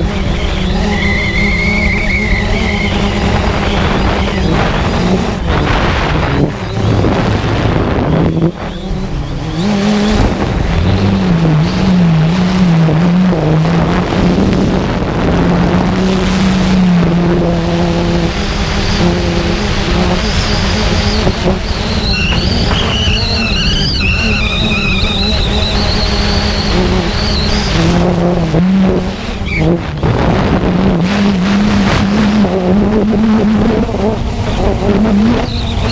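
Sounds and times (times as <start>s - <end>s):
remote-controlled aircraft motors: 0.0s - 11.9s, 18.0s - 28.2s
high-pitched whine: 0.0s - 35.9s.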